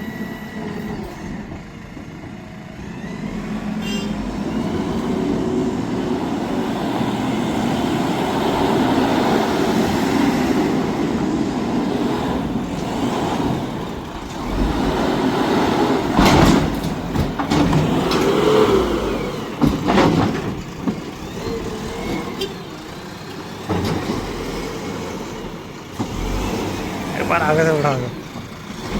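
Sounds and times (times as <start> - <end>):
diesel engine running: 0.0 - 28.9.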